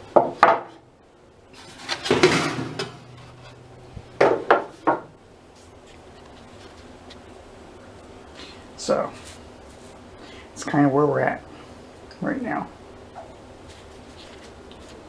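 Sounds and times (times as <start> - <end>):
metal clattering in a drawer: 1.6 - 3.0.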